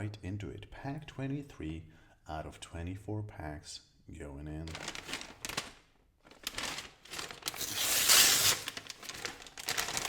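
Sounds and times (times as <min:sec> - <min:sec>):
plastic rustling: 0:04.6 - 0:10.0
plastic bag crinkling and tearing: 0:04.7 - 0:10.0.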